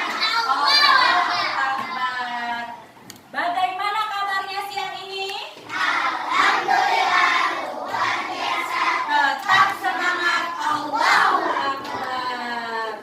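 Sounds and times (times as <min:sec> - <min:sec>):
children singing in chorus: 0:05.7 - 0:12.2.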